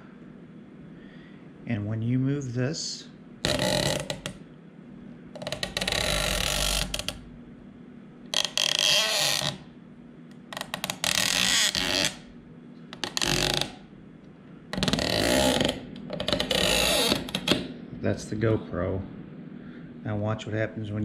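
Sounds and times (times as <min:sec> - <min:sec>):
clamp rubbing and creaking: 0:03.4 - 0:04.4, 0:05.4 - 0:07.2, 0:10.6 - 0:12.2, 0:13.0 - 0:13.8, 0:14.8 - 0:17.6.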